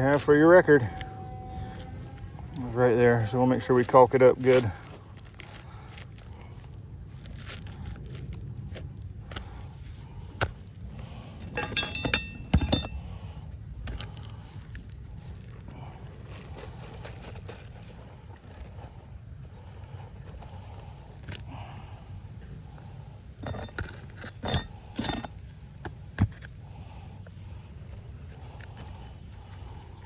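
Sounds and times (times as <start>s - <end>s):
low rumble: 0.0s - 3.7s
roofing tools clinking and scraping: 11.0s - 13.3s, 23.4s - 25.6s, 28.4s - 30.0s.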